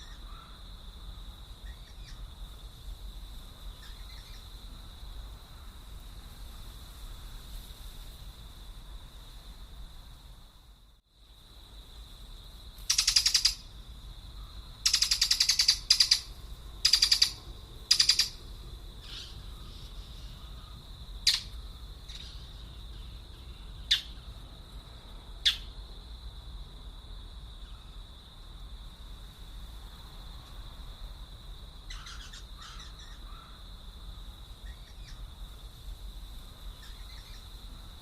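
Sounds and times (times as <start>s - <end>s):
bird chirps: 12.9s - 13.6s, 14.8s - 18.4s, 21.2s - 24.2s
birds making harsh rattling calls: 12.9s - 13.7s, 14.8s - 18.4s, 19.0s - 24.3s, 31.9s - 33.6s.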